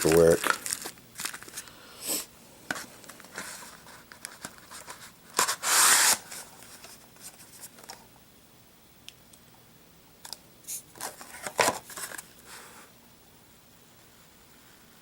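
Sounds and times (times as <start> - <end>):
packaging rustling and crinkling: 0.0 - 1.7, 10.9 - 12.4.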